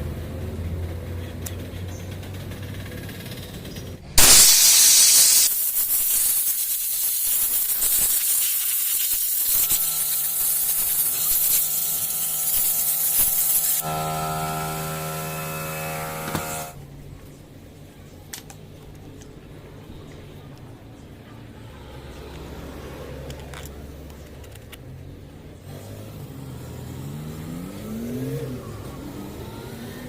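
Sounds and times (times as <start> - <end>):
compressed air hissing: 4.2 - 16.8.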